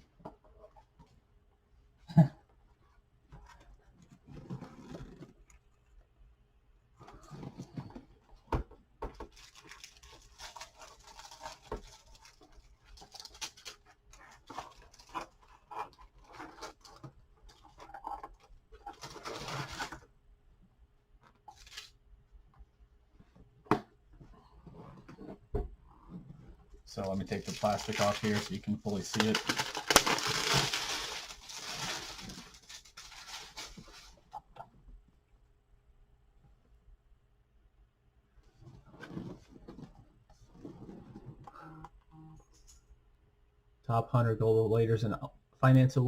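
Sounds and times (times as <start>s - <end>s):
packaging rustling and scraping: 9.2s - 20.1s, 26.1s - 34.4s.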